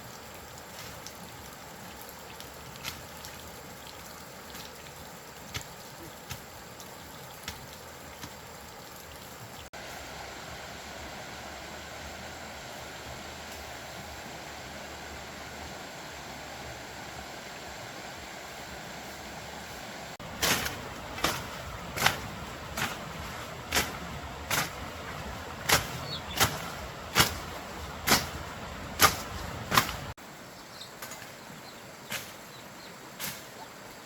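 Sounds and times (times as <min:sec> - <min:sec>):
outdoor background hiss: 0:00.0 - 0:34.0
hand tool striking: 0:20.4 - 0:30.1.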